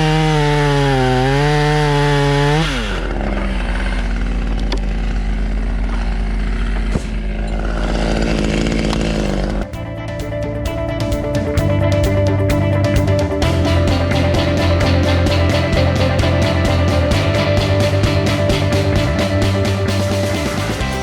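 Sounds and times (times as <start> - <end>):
chainsaw cutting wood: 0.0 - 9.7, 13.4 - 21.0.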